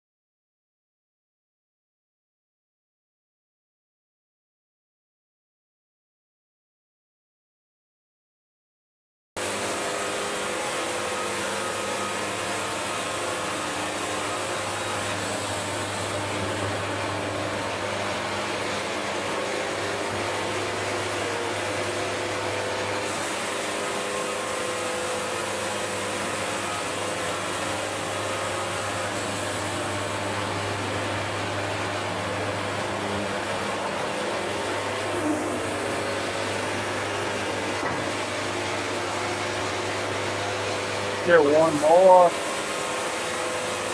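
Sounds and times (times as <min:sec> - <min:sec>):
band sawmill droning: 0:09.4 - 0:43.9.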